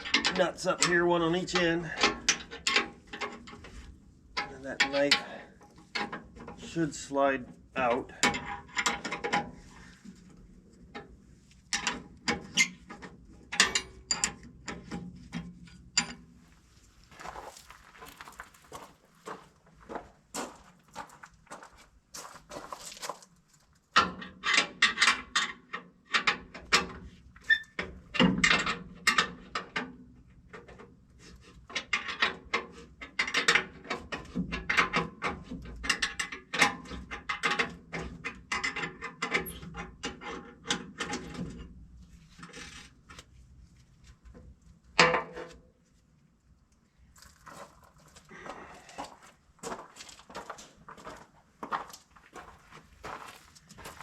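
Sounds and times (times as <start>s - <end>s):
hand tools clicking and clanking: 0.0s - 3.7s, 4.4s - 6.8s, 8.1s - 10.2s, 11.7s - 16.4s.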